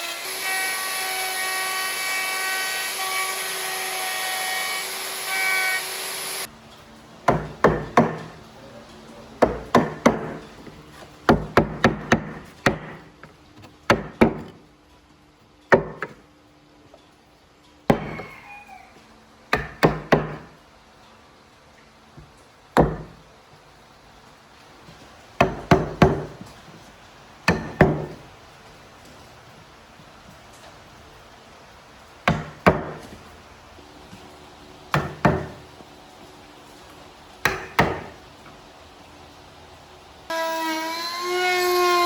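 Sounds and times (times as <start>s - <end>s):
power tool whining: 0.0s - 6.5s, 40.3s - 42.0s.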